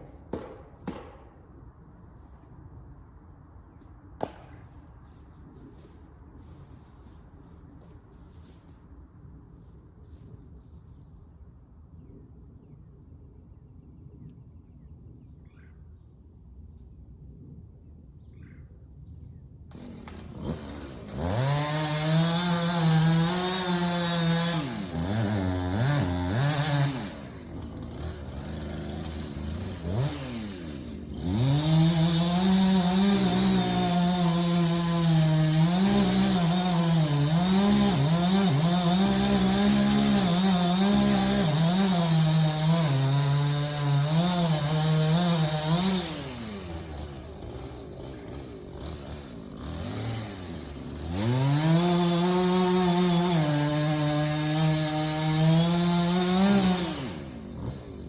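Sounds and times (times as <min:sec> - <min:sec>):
chainsaw revving and cutting: 0:19.7 - 0:58.0.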